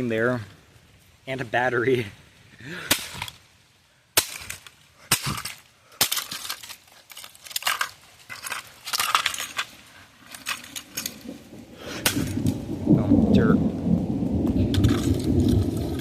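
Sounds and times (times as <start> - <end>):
plastic and glass crunching: 4.2 - 11.3.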